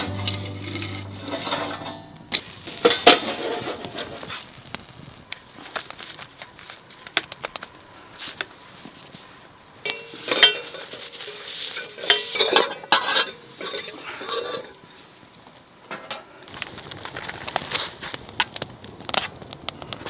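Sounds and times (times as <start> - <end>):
metal utensil scraping cookware: 0.0 - 4.0, 9.9 - 14.8.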